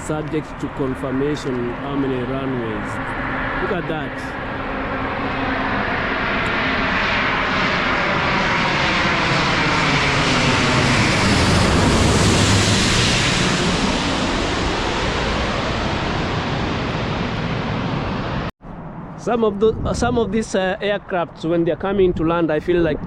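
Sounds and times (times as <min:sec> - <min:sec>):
airliner passing low overhead: 0:00.0 - 0:23.0.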